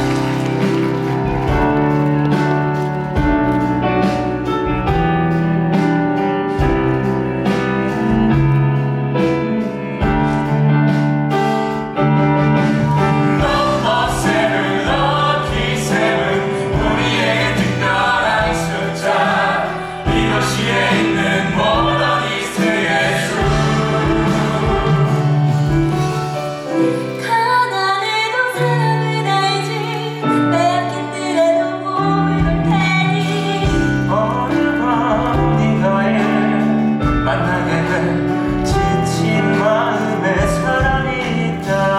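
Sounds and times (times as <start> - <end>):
instrumental accompaniment: 0.0 - 41.9
cast singing together: 13.4 - 26.8, 32.0 - 41.9.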